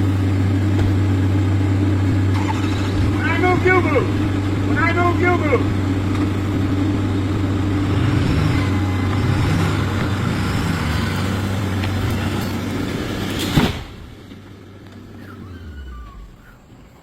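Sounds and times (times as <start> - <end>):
vehicle engine under load: 0.0 - 17.0
tree crashing down: 9.1 - 14.4.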